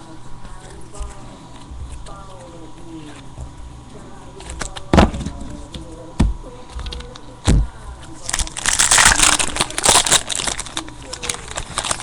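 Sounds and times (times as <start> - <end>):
foil wrapper crinkling and tearing: 8.2 - 12.0.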